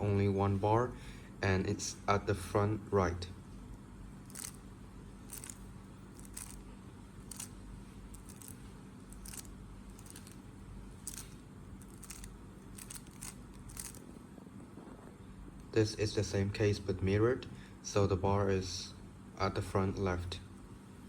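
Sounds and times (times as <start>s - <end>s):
puzzle cube plastic clicks: 4.3s - 4.6s, 5.3s - 5.6s, 6.2s - 6.6s, 7.3s - 7.5s, 8.1s - 10.4s, 11.0s - 14.1s.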